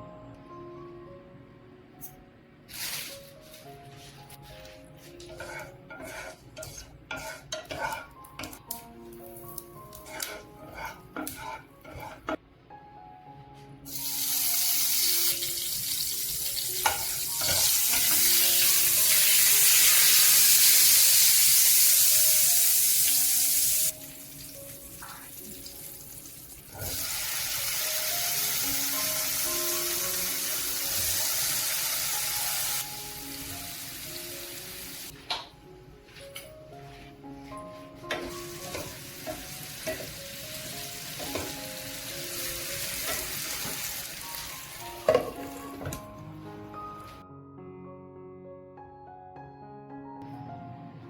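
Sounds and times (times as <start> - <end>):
background music: 0.0 - 51.0
food sizzling in a pan: 13.9 - 35.1, 38.2 - 45.9.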